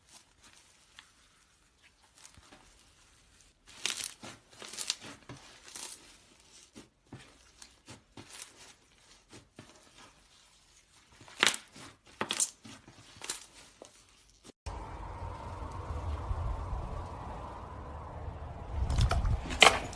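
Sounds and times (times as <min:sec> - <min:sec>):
low rumble: 0:14.7 - 0:19.9.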